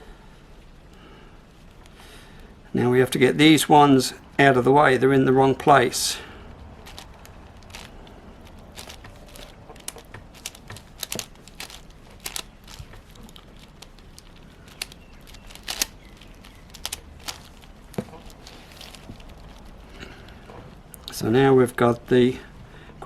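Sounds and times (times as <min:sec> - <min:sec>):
puzzle cube clicking: 0:06.9 - 0:19.6.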